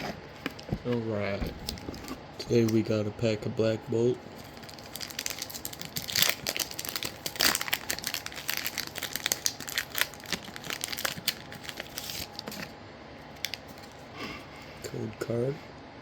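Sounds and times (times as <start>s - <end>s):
foil wrapper crinkling and tearing: 4.3s - 12.7s, 13.3s - 14.1s.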